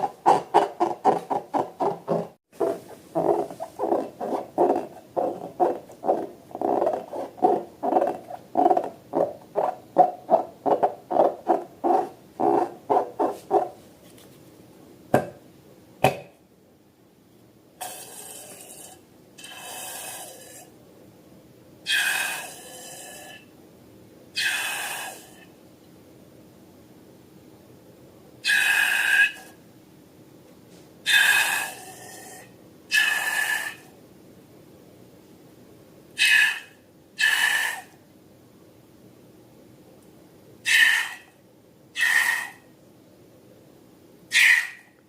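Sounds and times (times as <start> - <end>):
wet slime pulses: 0.0 - 13.8.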